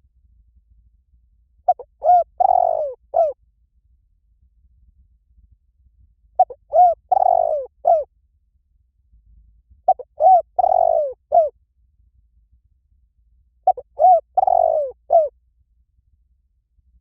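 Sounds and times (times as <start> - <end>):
dove cooing: 1.7 - 3.4, 6.4 - 8.1, 9.9 - 11.5, 13.7 - 15.3.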